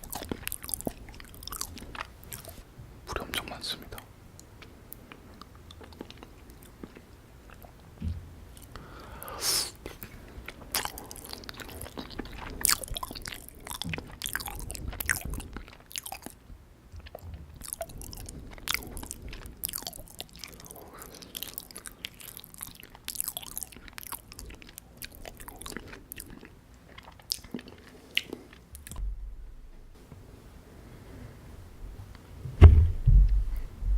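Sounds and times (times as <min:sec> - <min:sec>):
wet mouth chewing: 0:00.0 - 0:02.6, 0:04.4 - 0:07.8, 0:09.6 - 0:29.0.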